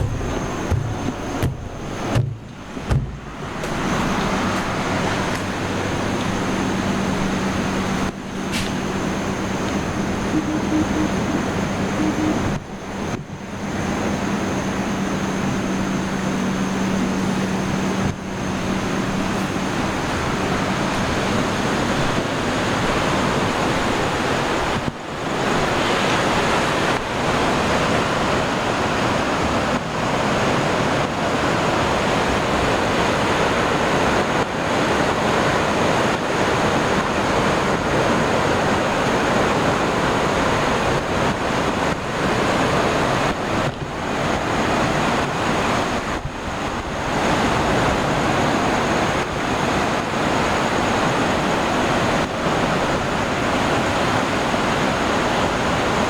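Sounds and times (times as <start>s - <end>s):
sea waves washing on shore: 0.0s - 56.0s.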